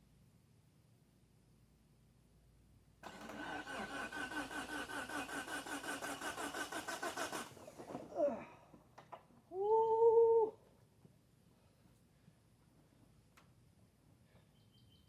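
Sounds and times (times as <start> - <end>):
starter motor cranking engine: 3.0 - 8.1.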